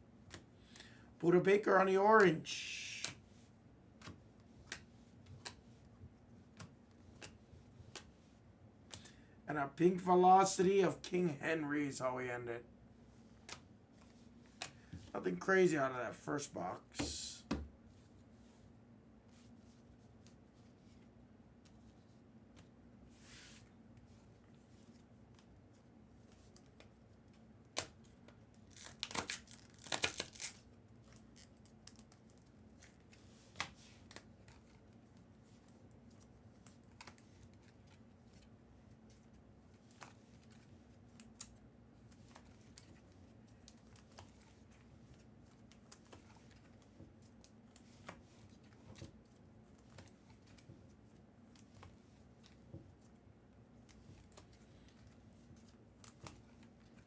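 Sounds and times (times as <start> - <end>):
card packaging tearing: 28.6 - 30.6.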